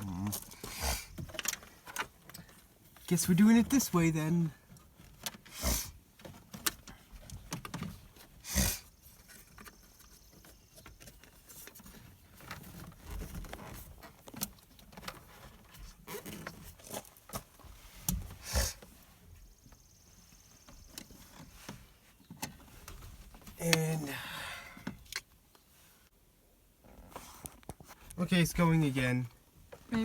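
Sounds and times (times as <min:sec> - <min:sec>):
rustling and light clicks: 0:09.1 - 0:23.6, 0:26.9 - 0:28.2.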